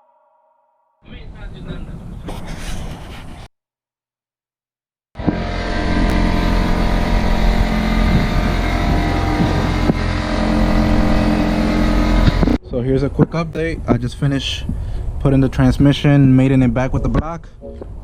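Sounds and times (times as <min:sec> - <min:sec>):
car engine running: 0:05.2 - 0:12.6.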